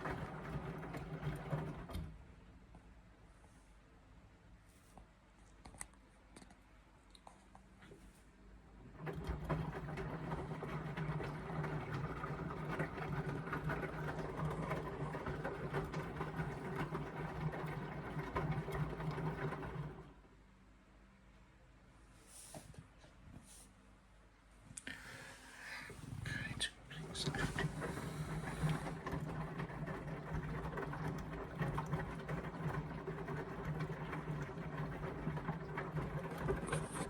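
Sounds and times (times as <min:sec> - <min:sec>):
washing machine motor humming: 0:00.0 - 0:02.3, 0:08.8 - 0:20.3, 0:26.3 - 0:37.0.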